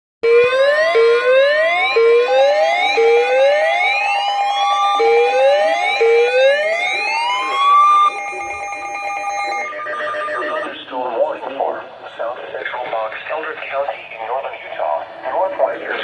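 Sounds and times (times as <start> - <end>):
rising whoop siren: 0.2 - 10.7
steady alert tone: 0.6 - 10.7.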